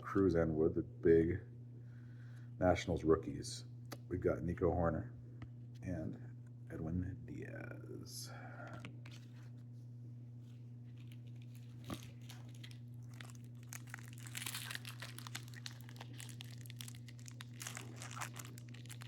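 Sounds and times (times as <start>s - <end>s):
steady low hum: 0.0s - 19.0s
foil wrapper crinkling and tearing: 10.8s - 19.0s.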